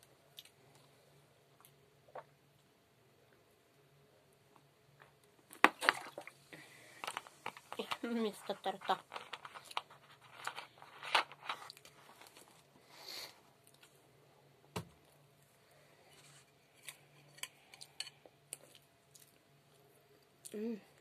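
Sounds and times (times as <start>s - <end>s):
person chewing: 16.8s - 19.4s.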